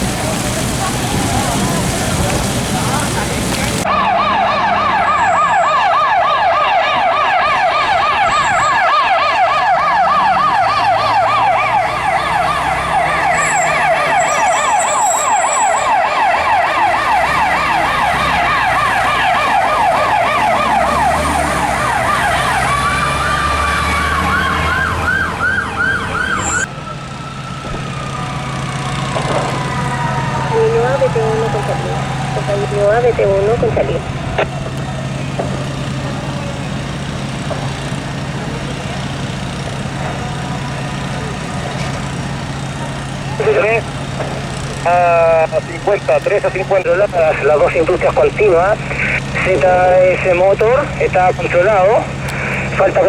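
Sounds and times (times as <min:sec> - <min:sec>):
low engine hum: 0:00.0 - 0:04.0, 0:17.4 - 0:53.0
fire engine siren yelping: 0:00.0 - 0:53.0
higher-pitched siren: 0:03.5 - 0:53.0.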